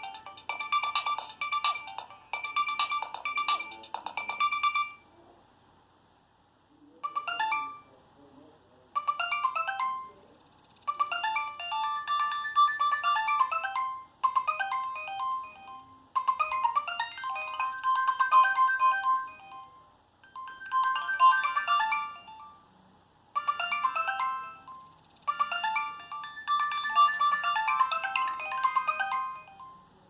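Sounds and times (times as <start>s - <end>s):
polyphonic phone ringtone melody: 0.0s - 5.0s, 7.0s - 8.0s, 9.0s - 22.7s, 23.3s - 30.0s.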